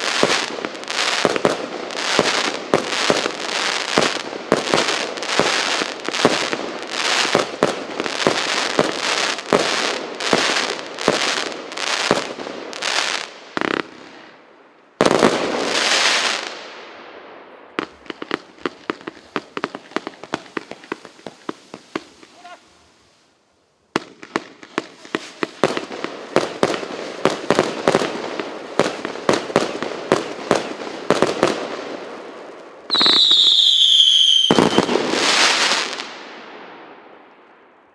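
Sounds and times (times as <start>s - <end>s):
firework crackling: 0.0s - 14.4s, 15.0s - 16.7s, 17.7s - 36.6s
firework shots and bangs: 24.0s - 31.9s, 32.9s - 36.2s
whistling firework shot: 32.9s - 35.8s.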